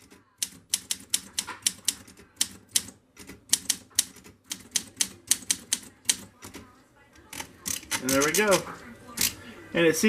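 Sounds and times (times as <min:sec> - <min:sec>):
typewriter keys clacking: 0:00.0 - 0:06.6.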